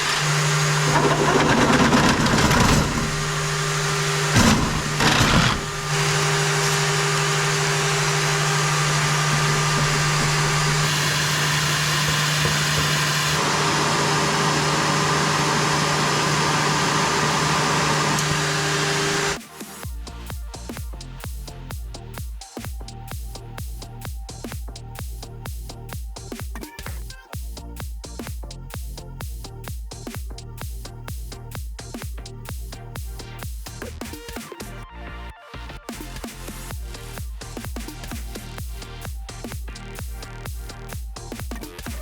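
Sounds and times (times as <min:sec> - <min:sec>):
electric pump motor humming: 0:00.0 - 0:19.4.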